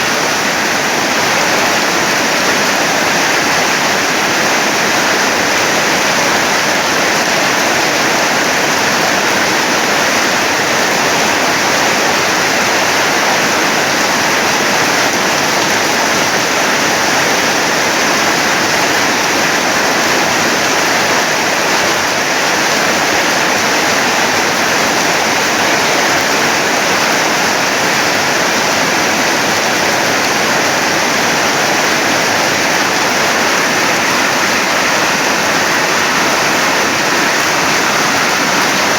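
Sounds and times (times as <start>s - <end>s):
heavy rain pouring: 0.0s - 38.9s.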